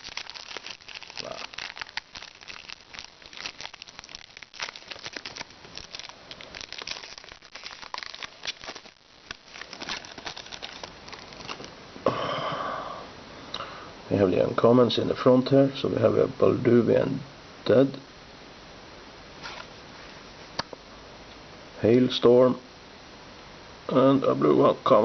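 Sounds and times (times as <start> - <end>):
foil wrapper crinkling: 0.0 - 11.8.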